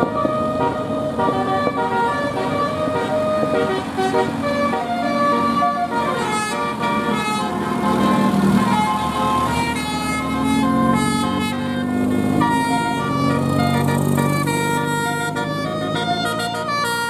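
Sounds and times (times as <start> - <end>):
bus air horns playing a tune: 0.0 - 17.0.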